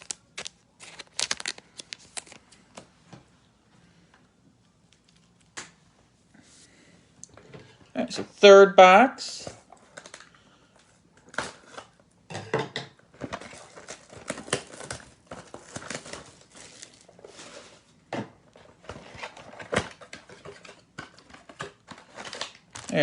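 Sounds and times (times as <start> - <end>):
foil packs rustling and crinkling: 0.0 - 2.6, 13.1 - 18.0, 18.6 - 23.0.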